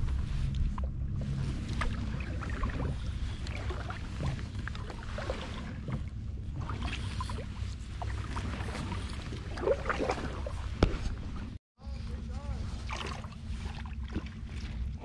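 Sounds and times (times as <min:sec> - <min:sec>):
water sloshing and dripping: 0:00.0 - 0:11.6, 0:12.6 - 0:15.0
steady low rumble: 0:00.0 - 0:15.0
small splashes: 0:01.5 - 0:10.9, 0:12.7 - 0:15.0.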